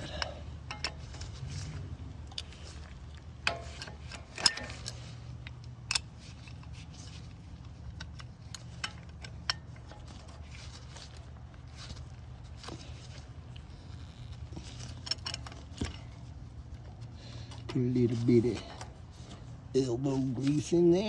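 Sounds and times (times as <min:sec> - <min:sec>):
pliers clicking on brake caliper: 0:00.0 - 0:11.3, 0:13.6 - 0:16.3
low steady hum: 0:00.0 - 0:21.0.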